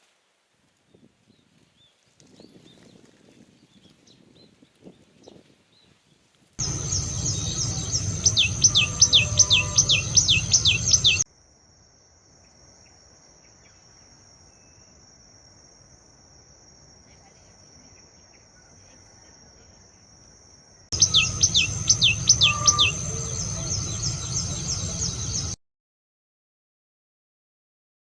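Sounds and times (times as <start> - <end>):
bird calling sharp falling notes: 6.6 - 11.2, 21.0 - 25.6
high insect buzz: 6.6 - 11.2.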